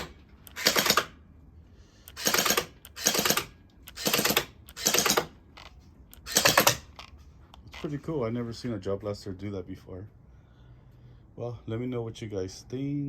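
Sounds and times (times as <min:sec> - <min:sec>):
gel blaster firing bursts: 0:00.0 - 0:01.1, 0:02.1 - 0:05.3, 0:06.2 - 0:06.9.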